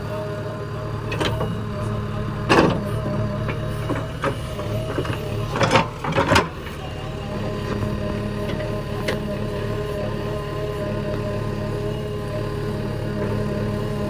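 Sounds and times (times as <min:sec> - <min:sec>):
heavy vehicle engine running: 0:00.0 - 0:14.0.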